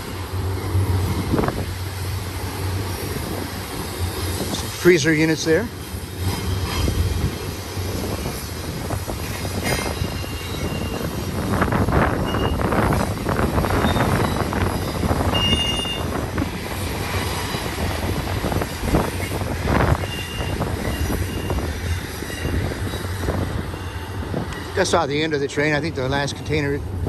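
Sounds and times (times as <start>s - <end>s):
train cars clanking: 0.0s - 27.0s
train wheels rumbling on rail: 0.0s - 27.0s
high wheel squeals: 9.5s - 16.2s, 19.2s - 24.2s.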